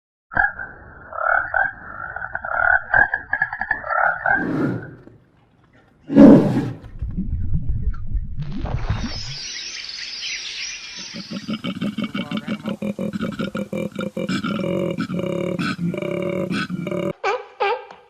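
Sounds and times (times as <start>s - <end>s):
low rumbling: 6.1s - 9.3s
harsh animal call: 11.1s - 17.5s.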